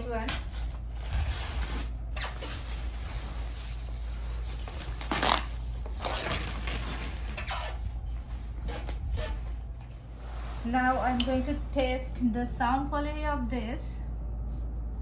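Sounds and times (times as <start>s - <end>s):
packaging rustling: 0.0s - 10.0s
steady low hum: 0.0s - 15.0s.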